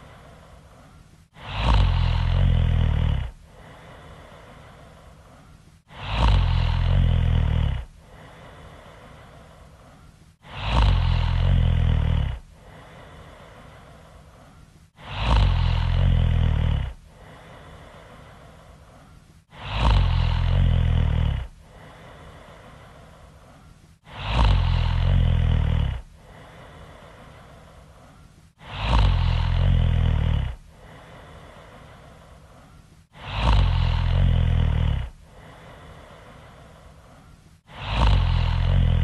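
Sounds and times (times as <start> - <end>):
woman snoring loudly: 1.3 - 4.8, 5.9 - 9.4, 10.4 - 13.9, 15.0 - 18.5, 19.5 - 22.9, 24.0 - 27.5, 28.6 - 32.1, 33.1 - 36.6, 37.7 - 39.0.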